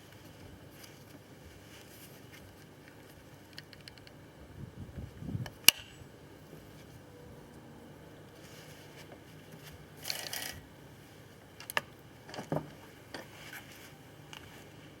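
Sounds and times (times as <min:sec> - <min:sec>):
metal parts rasping: 0:09.5 - 0:10.6.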